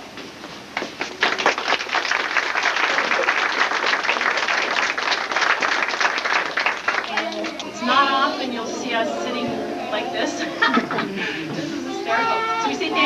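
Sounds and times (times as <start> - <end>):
crowd applauding: 0.8 - 7.9.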